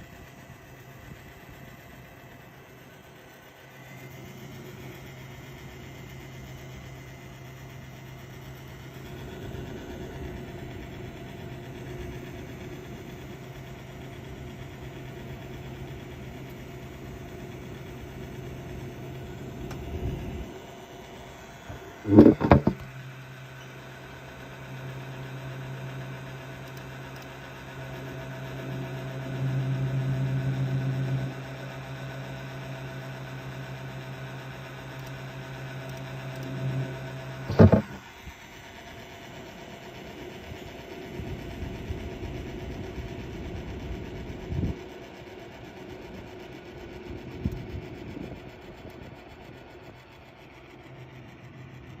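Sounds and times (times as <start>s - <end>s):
graphics card fans humming: 0.0s - 52.0s
loud clattering knocks: 22.1s - 22.8s.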